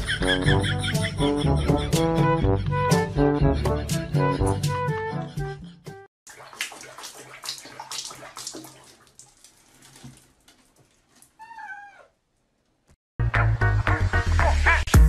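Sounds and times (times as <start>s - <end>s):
upbeat music: 0.1s - 6.0s
cat meow: 11.4s - 12.2s.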